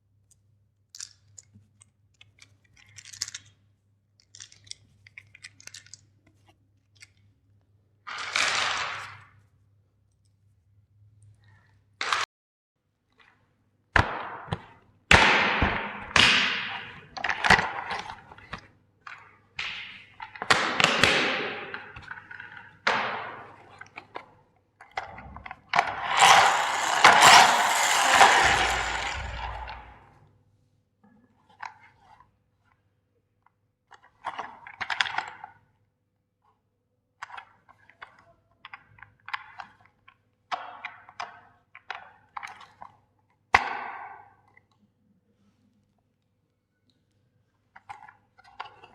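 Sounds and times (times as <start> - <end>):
light clicks and clatter: 0.2 - 7.3
hammer smashing plastic toys: 25.8 - 30.0.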